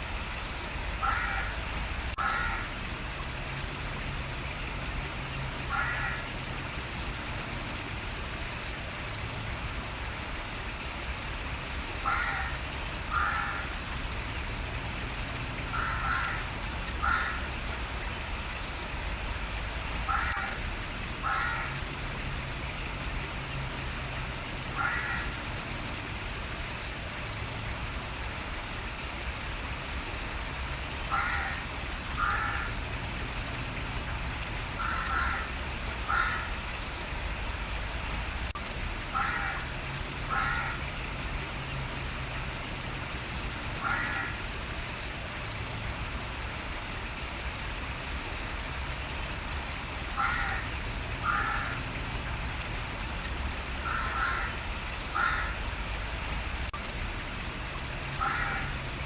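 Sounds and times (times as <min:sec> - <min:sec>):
running water: 0:00.0 - 0:59.0
bird calling: 0:12.0 - 0:13.6, 0:15.8 - 0:17.4, 0:34.8 - 0:35.5, 0:53.8 - 0:55.6.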